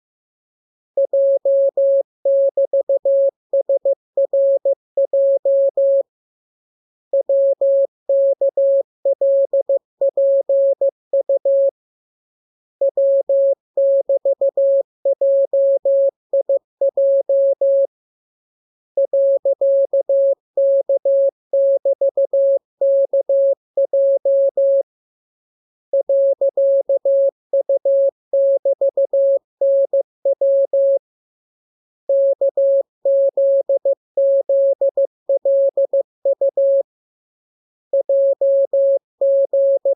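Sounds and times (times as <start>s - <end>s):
morse code tone: 25.9s - 31.0s, 32.1s - 36.8s, 37.9s - 39.9s.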